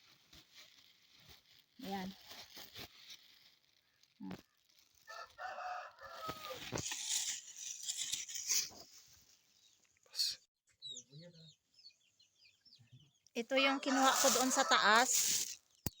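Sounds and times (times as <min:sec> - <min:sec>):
rooster crowing: 0:05.1 - 0:06.6, 0:13.7 - 0:15.1
rustling hiss: 0:13.9 - 0:15.6.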